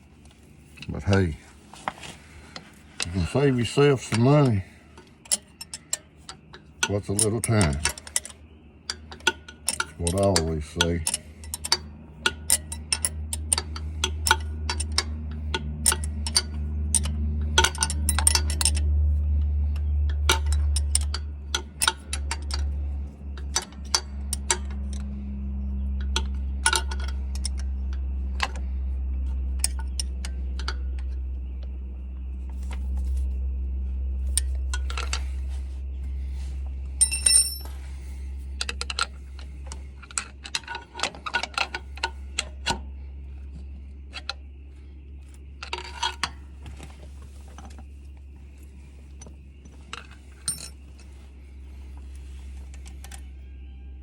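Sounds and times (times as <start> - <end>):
steady low hum: 0.0 - 54.0
metal tools clinking: 0.6 - 44.4, 45.2 - 53.5
metallic ring: 32.5 - 39.4, 49.9 - 52.0.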